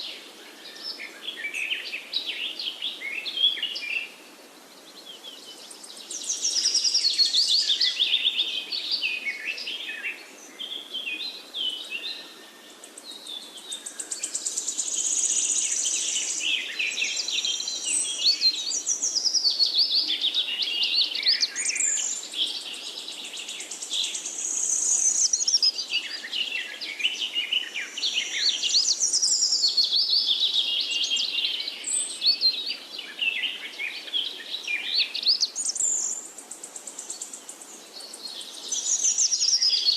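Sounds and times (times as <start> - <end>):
birds singing in chorus: 0.0 - 39.9.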